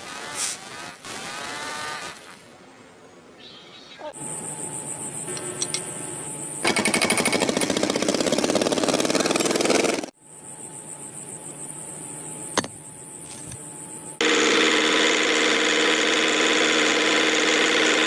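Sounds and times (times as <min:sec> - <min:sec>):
loud rapid rattle: 0:06.6 - 0:10.1
small motor whirring: 0:14.2 - 0:18.0.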